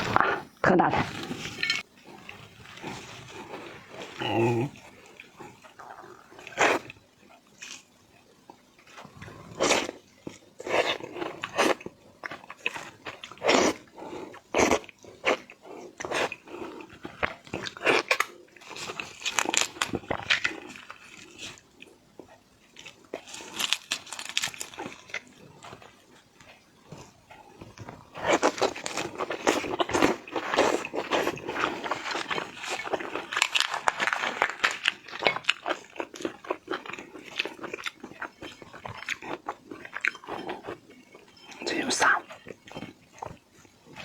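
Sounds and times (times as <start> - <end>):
crunching and chewing: 1.0 - 44.0
prawn shells cracking: 23.2 - 25.1, 31.8 - 38.5.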